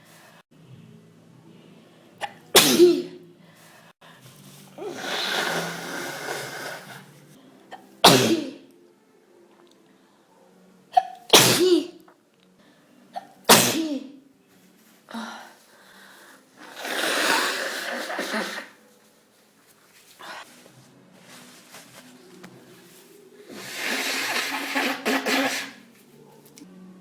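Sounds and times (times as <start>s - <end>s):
woman sneezing: 2.2s - 3.2s, 8.0s - 8.6s, 10.9s - 12.0s, 13.2s - 14.2s, 16.8s - 18.8s, 23.5s - 25.8s
breathy noise: 3.4s - 7.9s, 15.0s - 18.9s.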